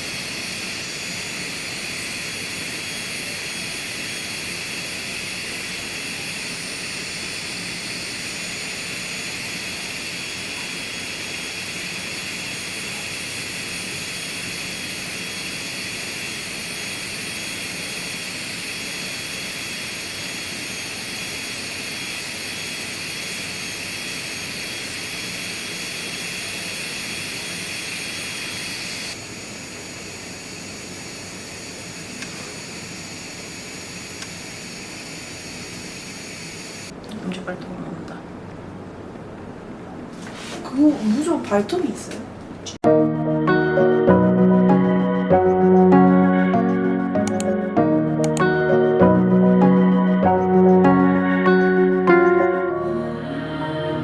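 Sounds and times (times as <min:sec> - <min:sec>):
electric nail drill whining: 0:00.0 - 0:36.9, 0:48.2 - 0:52.6.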